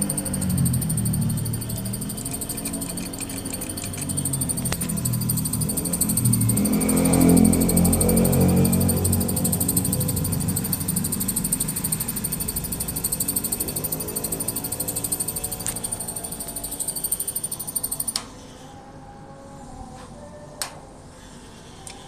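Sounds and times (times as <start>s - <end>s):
sharp clicks: 0.0s - 6.8s
banknote counting machine rattling: 0.0s - 18.1s.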